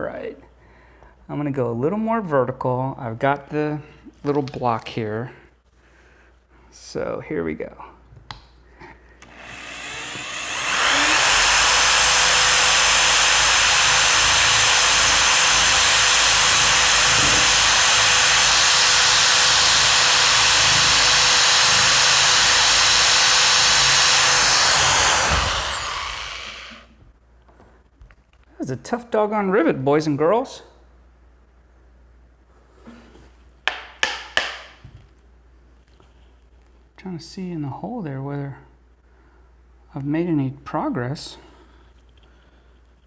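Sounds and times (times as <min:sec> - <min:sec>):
electric drill boring into metal: 0:09.2 - 0:26.9.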